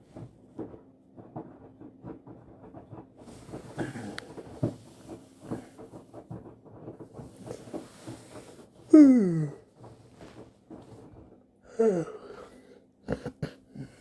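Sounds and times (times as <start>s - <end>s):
washing machine knocking and thumping: 0.0s - 8.4s.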